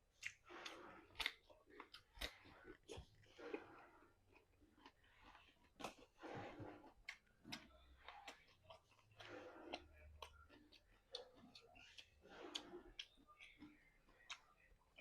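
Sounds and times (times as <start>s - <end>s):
soft breaths: 0.0s - 14.7s
person chewing: 0.0s - 15.0s
wet mouth clicks: 0.1s - 2.4s.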